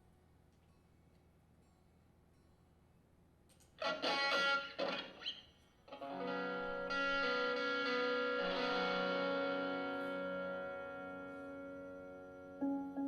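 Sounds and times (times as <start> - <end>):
electric guitar notes and chords: 3.8 - 13.0.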